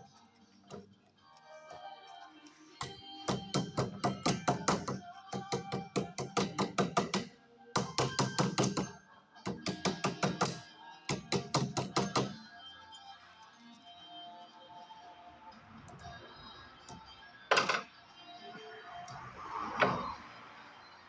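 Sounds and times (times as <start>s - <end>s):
background music: 0.0s - 21.0s.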